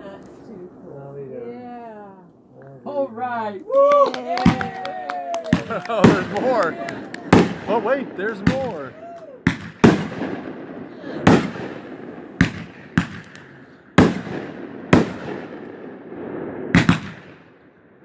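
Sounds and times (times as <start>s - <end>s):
fireworks bursting with bangs: 3.8s - 18.0s.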